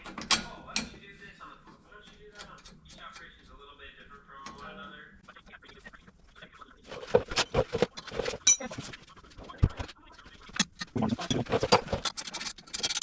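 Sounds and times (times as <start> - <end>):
metal tools clinking: 7.0 - 9.0.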